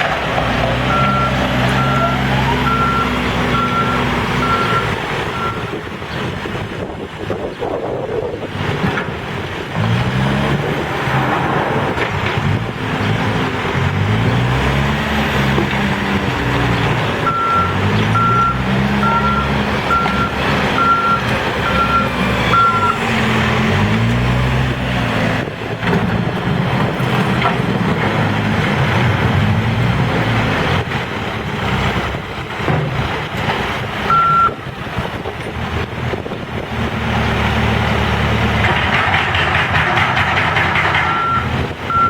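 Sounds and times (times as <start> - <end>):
diesel engine revving: 0.0 - 42.0
backup alarm beeping: 17.3 - 23.0, 41.2 - 42.0.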